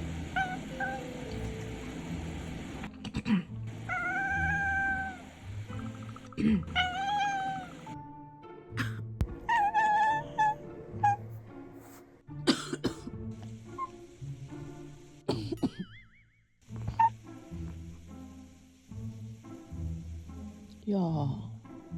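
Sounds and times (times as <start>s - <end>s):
background music: 0.0s - 21.9s
cat meowing: 0.3s - 1.5s, 3.8s - 5.3s, 6.6s - 8.0s, 9.5s - 11.2s, 16.9s - 17.2s
person coughing: 8.8s - 9.1s, 12.5s - 13.1s, 15.3s - 15.9s.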